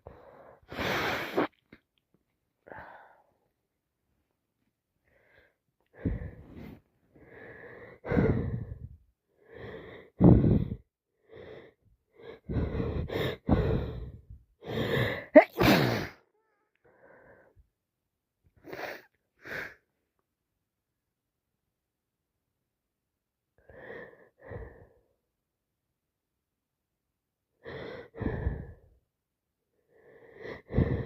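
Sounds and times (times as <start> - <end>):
wheezy gasping breaths: 0.0 - 1.6, 5.0 - 16.2, 27.6 - 28.9, 29.9 - 31.0
woman sneezing: 15.4 - 16.2.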